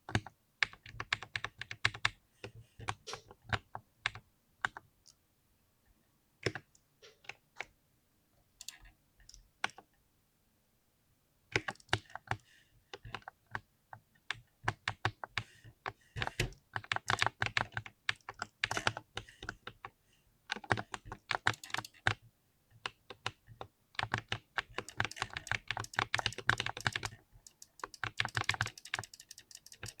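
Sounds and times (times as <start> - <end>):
mechanical keyboard typing: 16.2 - 19.0, 20.5 - 22.2, 22.8 - 30.0.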